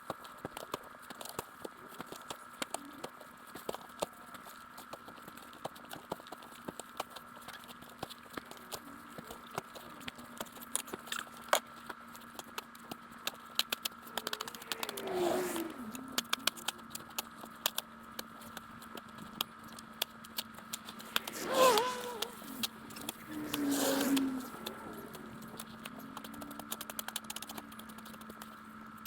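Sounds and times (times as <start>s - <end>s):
falling pitched sound: 14.1s - 16.3s, 20.9s - 26.0s.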